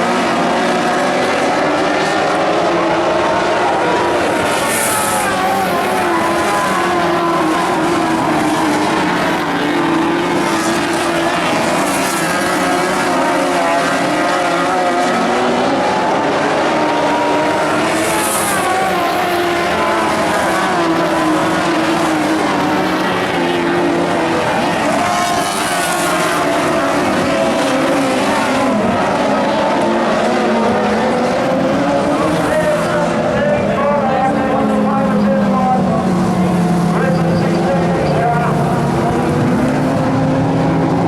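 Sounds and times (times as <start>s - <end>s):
race car engines revving: 0.0s - 41.0s.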